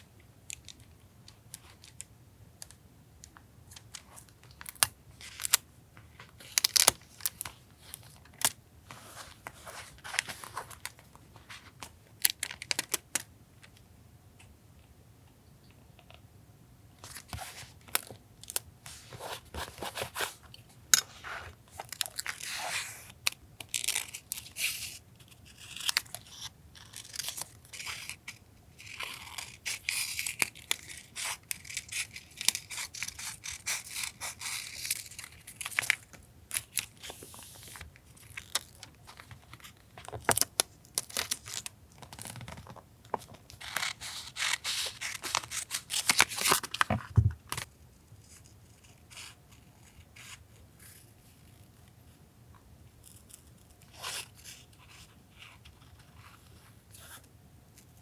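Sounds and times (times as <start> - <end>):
paper rustling: 18.9 - 22.8, 42.1 - 47.7.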